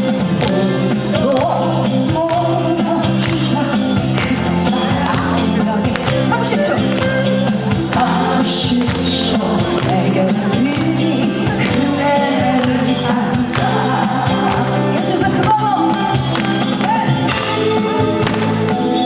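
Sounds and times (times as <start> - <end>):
live band playing folk-pop: 0.0 - 19.0
person singing: 0.0 - 19.0.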